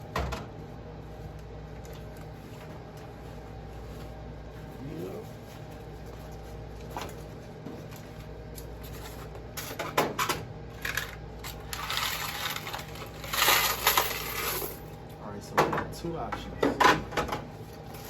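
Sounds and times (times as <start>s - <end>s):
low steady hum: 0.0s - 18.0s
coins clinking: 10.8s - 14.8s.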